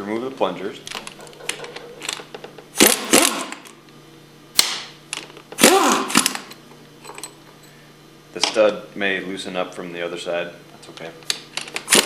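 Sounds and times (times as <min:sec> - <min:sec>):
metal clicks and clanks: 0:00.9 - 0:02.7
metal parts clattering: 0:01.0 - 0:02.4.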